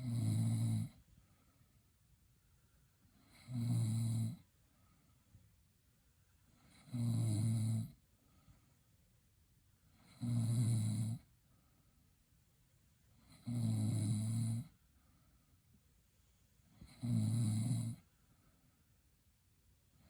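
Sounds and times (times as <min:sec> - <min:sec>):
woman snoring: 0:00.0 - 0:01.0, 0:03.2 - 0:04.5, 0:06.6 - 0:08.0, 0:10.0 - 0:11.3, 0:13.2 - 0:14.8, 0:16.8 - 0:18.1
quiet breaths: 0:00.0 - 0:20.0.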